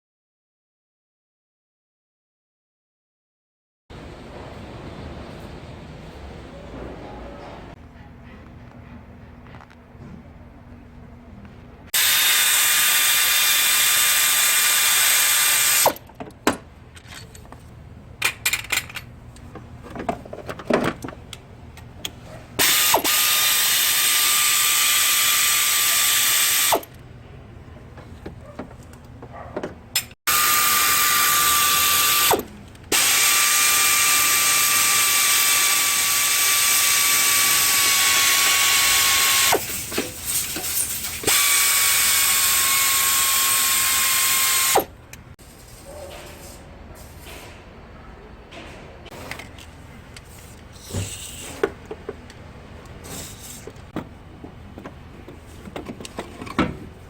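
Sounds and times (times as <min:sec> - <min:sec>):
power tool hissing and whining: 0:12.0 - 0:16.0, 0:30.3 - 0:39.9
clicks and knocks of tool work: 0:15.8 - 0:23.0, 0:48.5 - 0:56.9.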